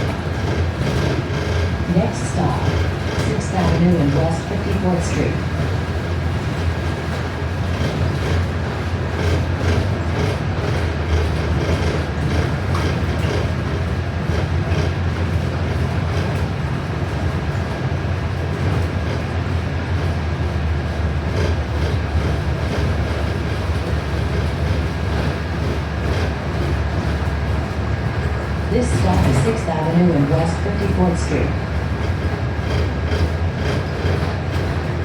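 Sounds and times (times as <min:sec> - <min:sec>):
bus engine and road rumble: 0:00.0 - 0:35.0.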